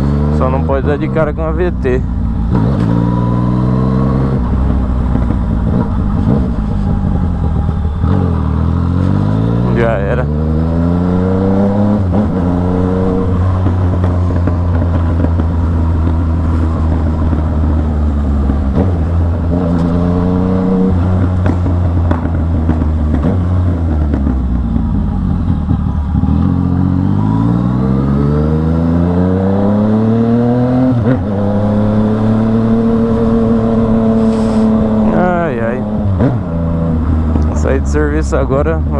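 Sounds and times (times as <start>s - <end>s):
motorcycle engine revving: 0.0s - 38.9s
motorcycle gear change: 2.5s - 9.8s.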